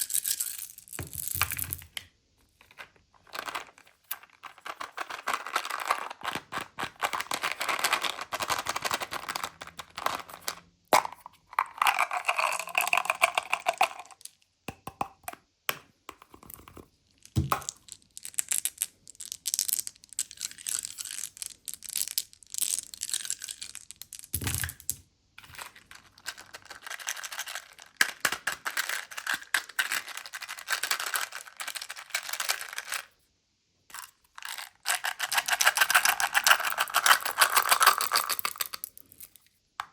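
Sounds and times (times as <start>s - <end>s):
plastic wrappers crinkling: 2.7s - 10.5s, 25.4s - 33.1s
hard candies rattling: 3.2s - 14.3s, 25.4s - 33.1s, 33.9s - 39.4s.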